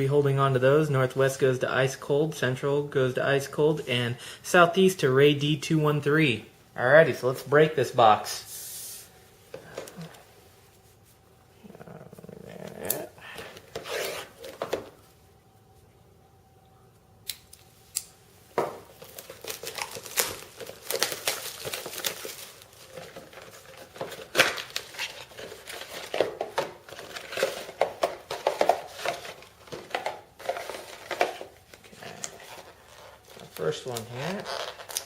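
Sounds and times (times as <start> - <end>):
packaging rustling and tearing: 12.9 - 15.0, 18.8 - 35.0.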